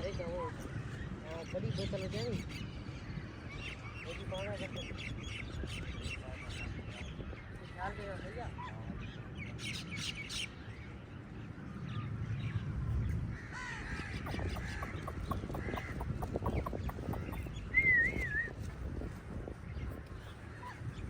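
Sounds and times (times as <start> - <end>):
crows cawing: 13.4 - 17.4.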